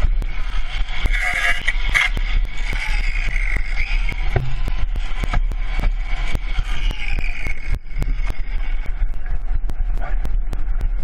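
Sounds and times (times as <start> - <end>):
motorcycle engine running: 0.0 - 11.0
wind noise: 0.0 - 11.0.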